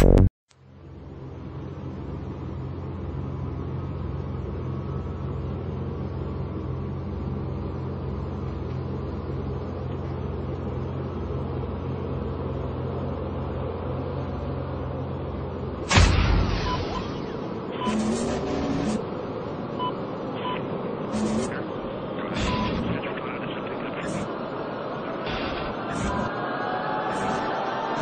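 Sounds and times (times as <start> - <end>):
low rumbling drone: 0.0 - 28.0.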